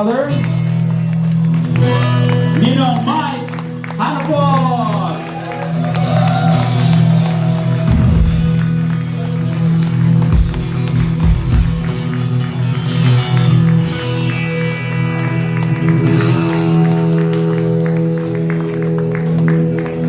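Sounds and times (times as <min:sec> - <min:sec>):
live band music with guitar: 0:00.0 - 0:20.0.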